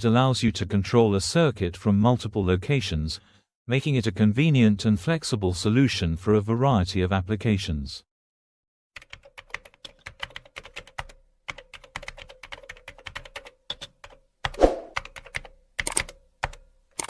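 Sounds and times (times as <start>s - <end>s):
computer keyboard typing: 9.0s - 17.0s.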